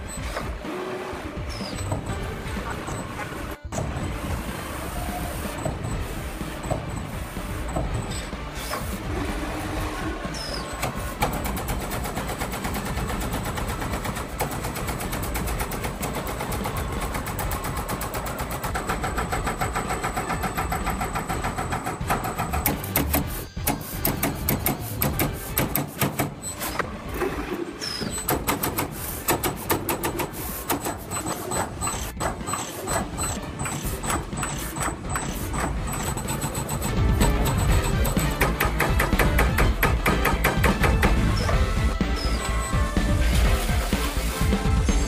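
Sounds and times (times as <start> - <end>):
sheet-metal machinery clicking: 10.4 - 26.8, 28.0 - 42.8.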